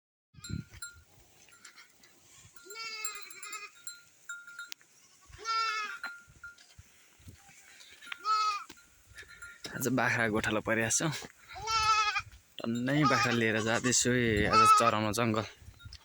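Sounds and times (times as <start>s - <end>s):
goats bleating: 2.6s - 3.9s, 5.0s - 6.2s, 8.0s - 8.8s, 11.5s - 15.2s.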